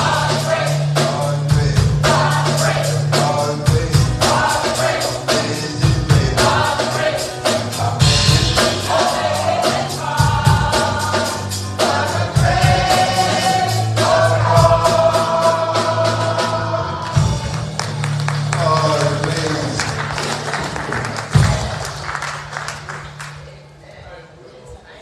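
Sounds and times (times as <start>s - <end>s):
gospel choir singing with band: 0.0s - 18.2s
steady drum beat: 0.0s - 22.2s.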